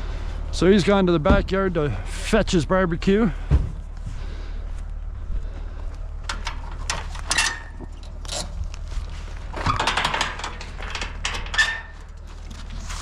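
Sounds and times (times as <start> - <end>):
low hum: 0.0 - 13.0
metal clanking and rattling: 6.2 - 13.0.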